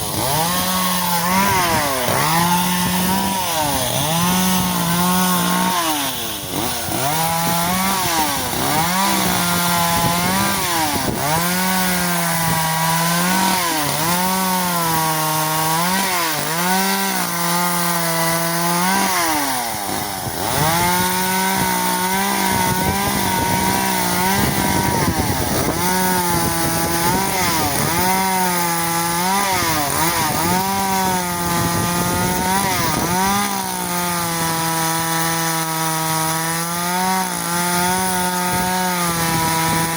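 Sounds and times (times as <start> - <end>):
chainsaw cutting branches: 0.0 - 39.9.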